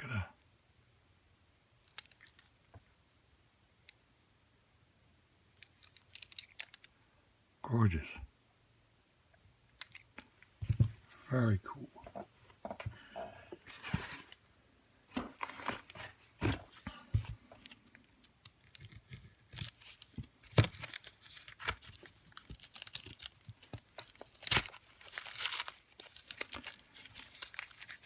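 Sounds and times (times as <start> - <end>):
packing wrap tearing and crinkling: 18.6 - 28.0.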